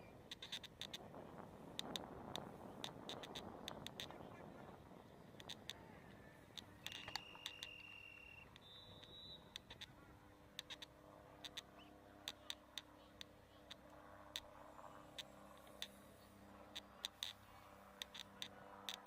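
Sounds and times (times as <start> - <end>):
sharp clicks: 0.3 - 1.1, 1.7 - 4.2, 5.3 - 5.8, 6.5 - 10.0, 10.6 - 14.5, 16.7 - 17.4, 18.0 - 19.0
referee's whistle: 6.9 - 9.5.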